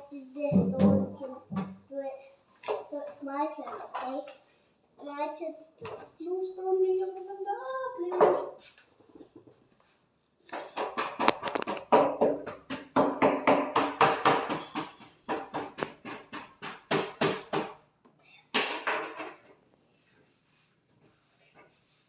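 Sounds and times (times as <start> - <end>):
rapid sharp knocks: 10.6 - 17.8.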